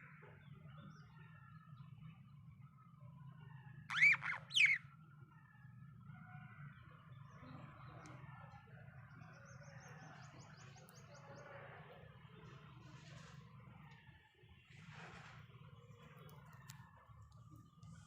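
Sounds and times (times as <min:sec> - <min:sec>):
budgerigar chatter and chirps: 0:03.9 - 0:04.8
budgerigar squawks: 0:03.9 - 0:04.8.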